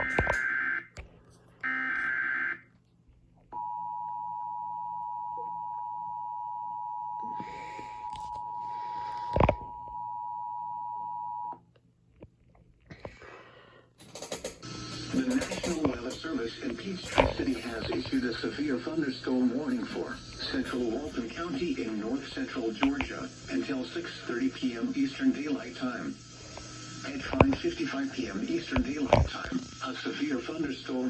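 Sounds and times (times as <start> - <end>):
screeching digital data bursts: 0.0 - 0.6, 14.2 - 31.0.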